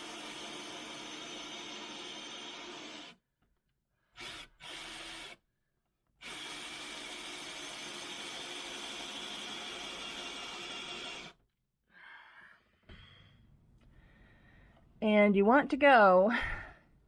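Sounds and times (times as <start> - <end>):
power drill with hole saw cutting wood: 0.0 - 3.2, 4.2 - 5.4, 6.2 - 11.4.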